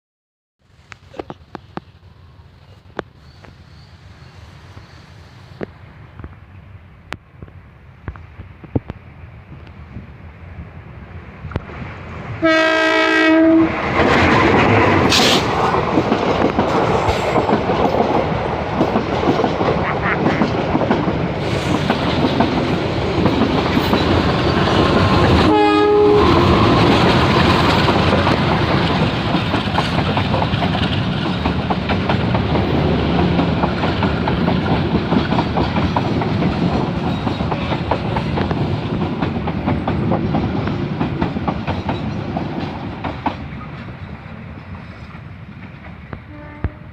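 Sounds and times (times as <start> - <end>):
train horn blast: 12.4 - 13.8, 25.4 - 26.9, 46.2 - 46.9
train wheels clattering: 13.7 - 46.3.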